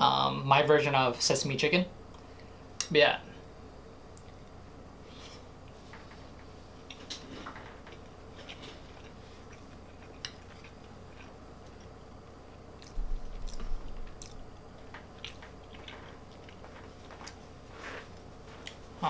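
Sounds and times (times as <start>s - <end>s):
person chewing food: 5.7s - 18.9s.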